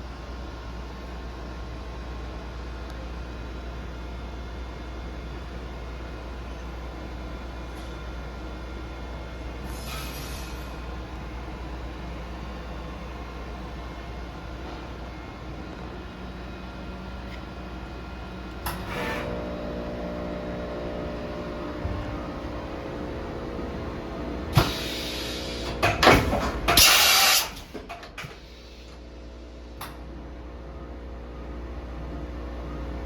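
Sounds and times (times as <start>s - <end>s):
machining center hum and whine: 0.0s - 33.0s
loud air hiss: 9.6s - 10.7s, 24.6s - 25.8s, 26.8s - 27.6s.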